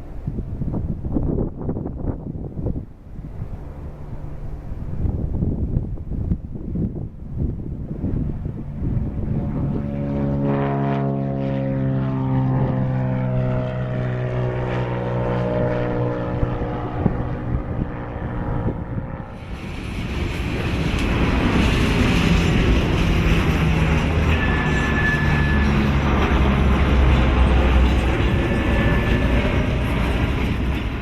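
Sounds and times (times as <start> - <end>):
propeller airplane passing: 0.0 - 31.0
rushing noise: 19.3 - 31.0.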